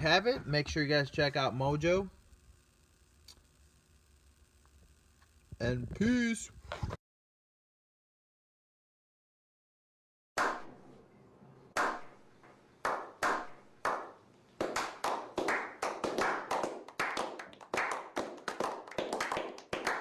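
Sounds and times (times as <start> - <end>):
sharp clap-like hits: 10.4 - 10.8, 11.8 - 12.2, 12.8 - 20.0.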